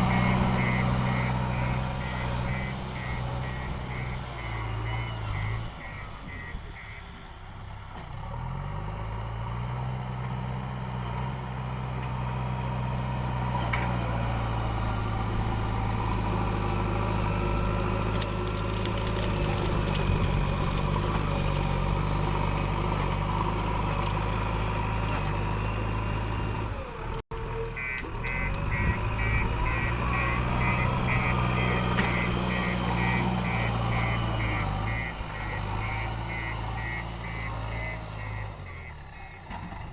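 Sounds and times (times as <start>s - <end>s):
pulsing high-pitched beep: 0.0s - 7.1s, 27.8s - 39.4s
diesel engine running: 0.0s - 39.9s.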